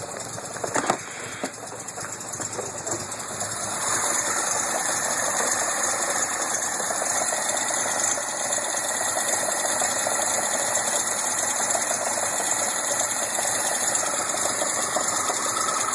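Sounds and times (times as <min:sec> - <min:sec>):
car engine with mechanical clatter: 0:00.0 - 0:15.9.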